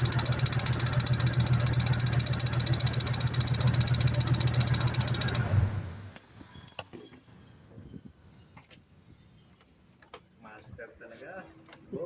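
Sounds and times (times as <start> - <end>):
engine idling with ticking: 0.0 - 5.6.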